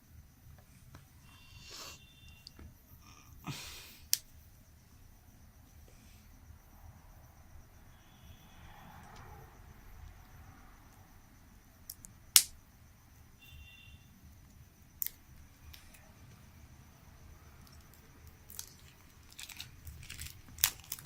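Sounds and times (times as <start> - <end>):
sharp clicks: 11.9 - 12.6
packaging handling noise: 18.5 - 21.0.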